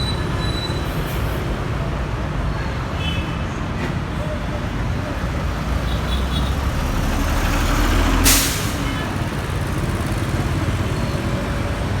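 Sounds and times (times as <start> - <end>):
bus engine rumbling: 3.6 - 12.0
air brake hiss: 8.2 - 9.0.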